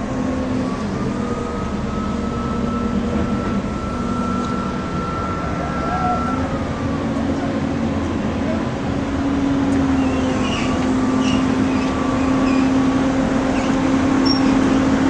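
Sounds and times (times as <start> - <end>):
backhoe engine running: 0.0 - 15.0
thin high whine: 3.3 - 7.1.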